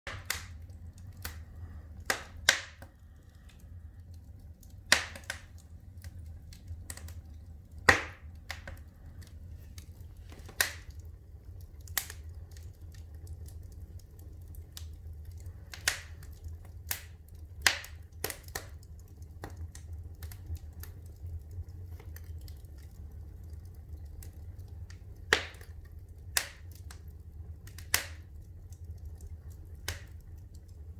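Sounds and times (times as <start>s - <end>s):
fireplace fire crackling: 0.1s - 30.9s
low steady background noise: 0.1s - 30.9s
sharp pops from fire: 0.1s - 30.9s.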